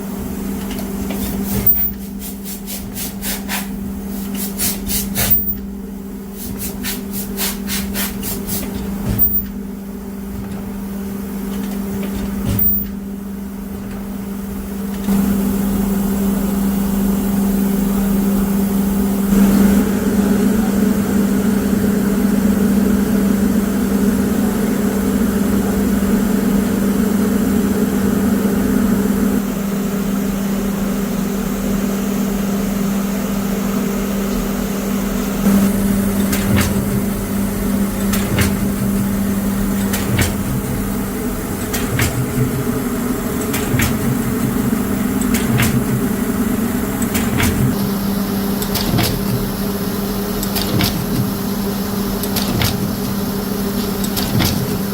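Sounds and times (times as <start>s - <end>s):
factory machinery humming: 0.0s - 54.9s
rapid clicking: 35.5s - 47.9s, 48.6s - 49.6s, 50.4s - 51.4s, 52.2s - 54.9s.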